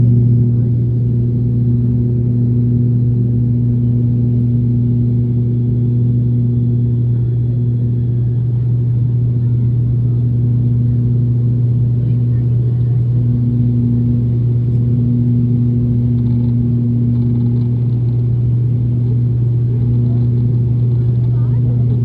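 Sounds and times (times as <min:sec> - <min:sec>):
propeller drone: 0:00.0 - 0:22.0.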